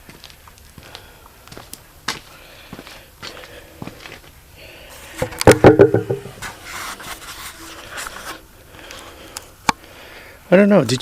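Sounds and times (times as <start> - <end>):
faint scraping: 4.9 - 8.4
loud clatter of knocks and rattles: 5.2 - 6.4.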